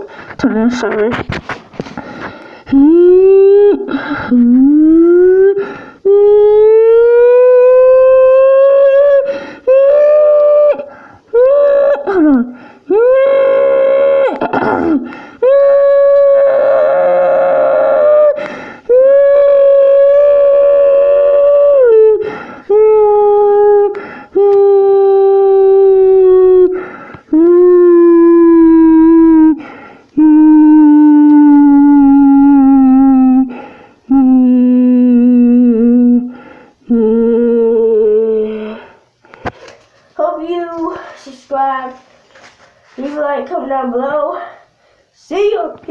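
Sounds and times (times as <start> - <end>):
sharp breaths: 1.8 - 2.7, 18.4 - 18.9
boy imitating siren wail: 2.7 - 14.5, 15.4 - 29.6, 30.2 - 36.3, 36.9 - 38.8.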